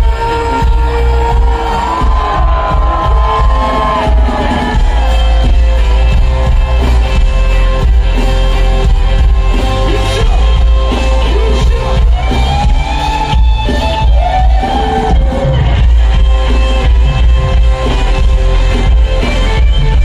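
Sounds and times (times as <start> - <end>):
live hip-hop music with heavy bass: 0.0 - 20.0
person singing: 9.4 - 16.0.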